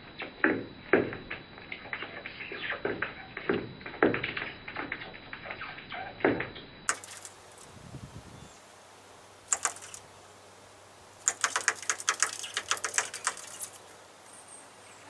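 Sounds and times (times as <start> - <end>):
bird beak tapping on metal grille: 9.5 - 10.0, 11.2 - 13.8.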